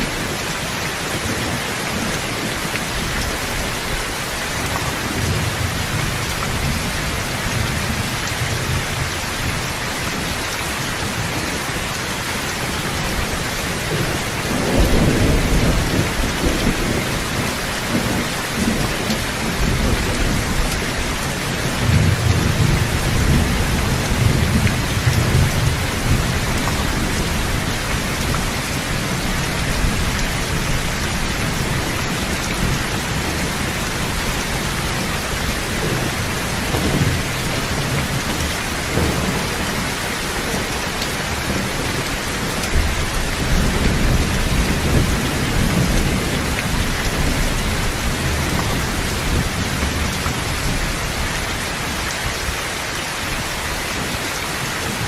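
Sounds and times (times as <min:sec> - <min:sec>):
steady rain: 0:00.0 - 0:55.0
thunder rumbling: 0:12.7 - 0:51.3.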